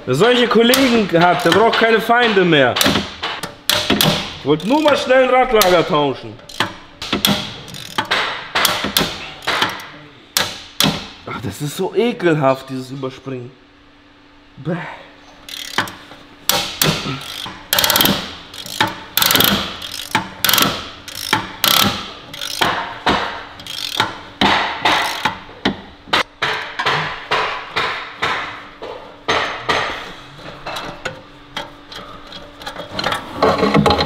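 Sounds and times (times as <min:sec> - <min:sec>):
hand ratchet clicking: 0:00.7 - 0:02.0, 0:02.8 - 0:05.8, 0:06.4 - 0:11.0, 0:15.5 - 0:22.8, 0:23.6 - 0:25.8.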